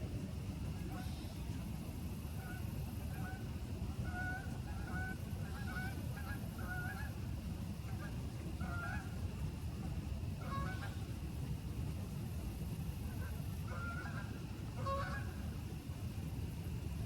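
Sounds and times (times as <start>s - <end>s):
steady low rumble: 0.0s - 17.0s
geese honking: 4.0s - 7.1s, 8.6s - 9.1s, 10.4s - 11.0s, 13.2s - 15.3s.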